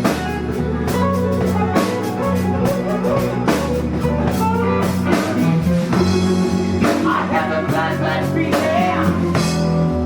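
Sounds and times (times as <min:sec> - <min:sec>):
band playing slow blues: 0:00.0 - 0:10.0
person singing: 0:06.6 - 0:09.8.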